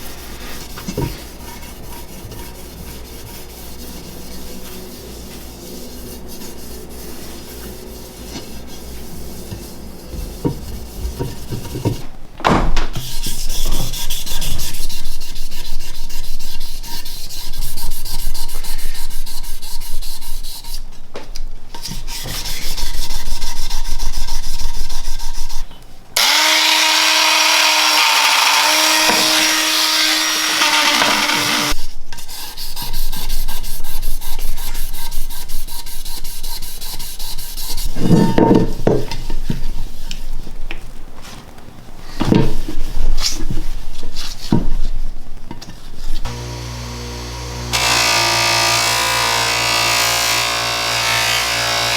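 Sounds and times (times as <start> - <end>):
abrasive sanding on metal: 0.0 - 12.0, 26.2 - 38.0
pitched hum with hiss: 46.2 - 49.9.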